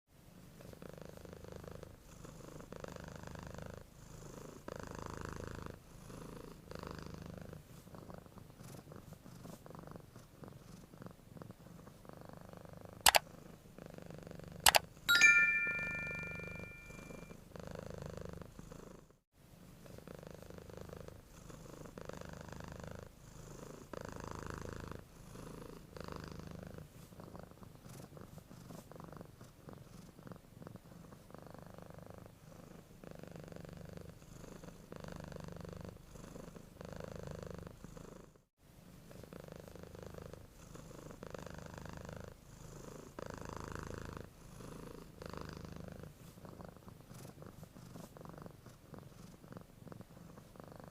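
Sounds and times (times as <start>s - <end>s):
cat purring: 0.3s - 14.7s, 17.2s - 50.9s.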